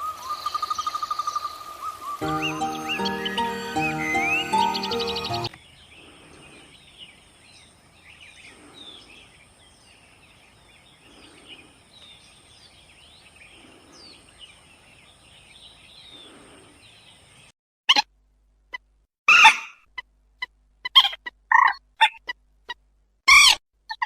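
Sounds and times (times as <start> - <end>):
small birds chirping: 0.0 - 17.5.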